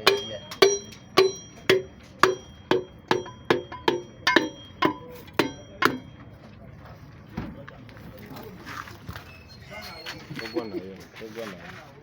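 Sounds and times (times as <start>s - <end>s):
hammer blows on metal: 0.0s - 6.2s.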